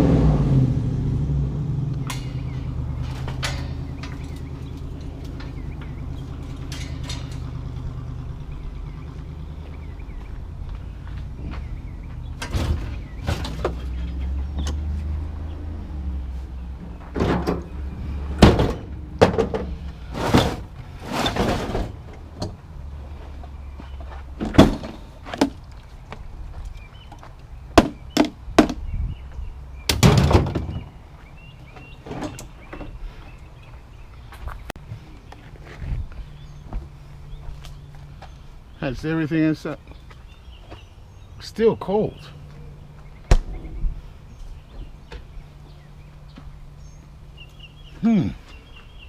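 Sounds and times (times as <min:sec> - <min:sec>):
low engine rumble: 0:00.0 - 0:49.0
bangs and clunks: 0:02.0 - 0:08.3, 0:12.3 - 0:15.0, 0:16.8 - 0:22.6, 0:24.3 - 0:25.6, 0:27.8 - 0:28.8, 0:29.9 - 0:31.0, 0:43.2 - 0:44.0.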